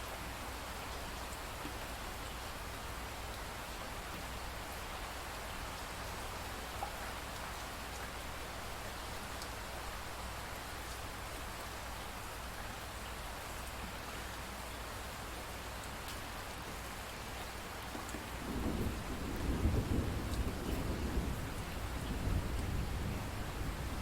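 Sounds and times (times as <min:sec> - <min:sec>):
steady rainfall: 0:00.0 - 0:24.0
rolling thunder: 0:18.4 - 0:24.0.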